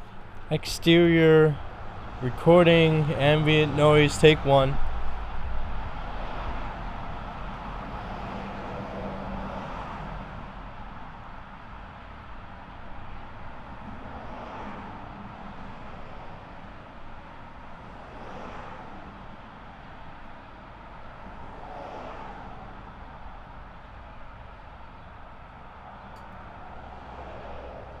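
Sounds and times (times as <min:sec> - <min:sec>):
distant traffic rumble: 0:00.0 - 0:08.6.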